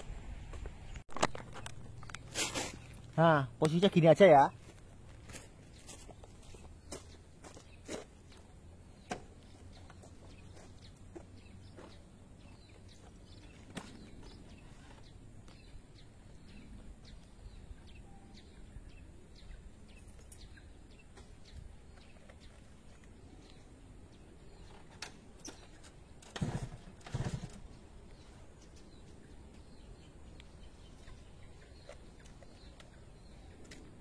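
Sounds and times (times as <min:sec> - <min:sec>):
faint bird chirps: 0:09.1 - 0:22.6.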